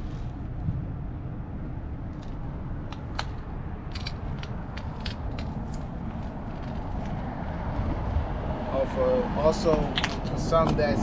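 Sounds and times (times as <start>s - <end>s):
low rumble of city traffic: 0.0s - 11.0s
sharp clicks and ticks: 2.1s - 7.2s.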